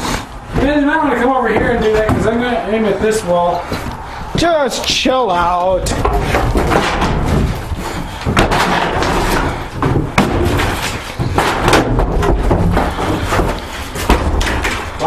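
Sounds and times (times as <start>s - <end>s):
wooden boards being struck: 5.8s - 15.0s.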